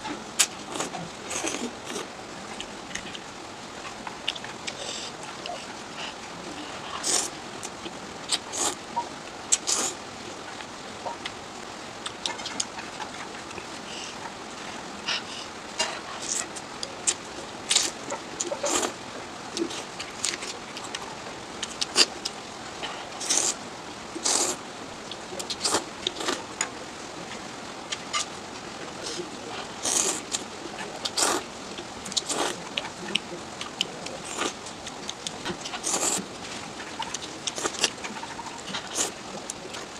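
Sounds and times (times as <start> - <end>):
person slurping noodles: 7.0 - 7.3, 8.5 - 8.8, 9.6 - 10.0, 23.2 - 23.6, 24.2 - 24.6, 29.8 - 30.4, 31.1 - 31.4, 32.2 - 32.6, 35.8 - 36.2.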